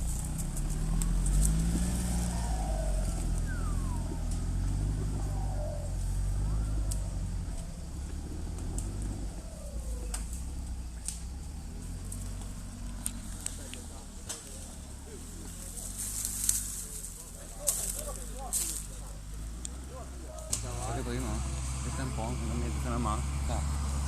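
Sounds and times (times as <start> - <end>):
faint gliding squeaks: 0.0 - 13.9
off-road vehicle engine low revs: 0.0 - 24.0.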